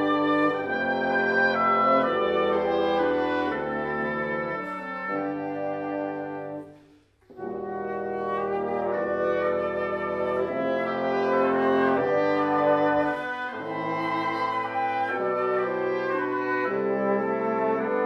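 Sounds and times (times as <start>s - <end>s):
wind ensemble playing chords: 0.0s - 18.0s.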